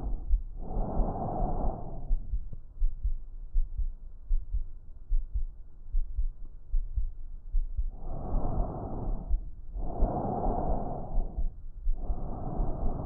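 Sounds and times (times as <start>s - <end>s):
breath sound through stethoscope: 0.0s - 2.5s, 7.8s - 13.0s
heartbeat thumps: 0.0s - 13.0s.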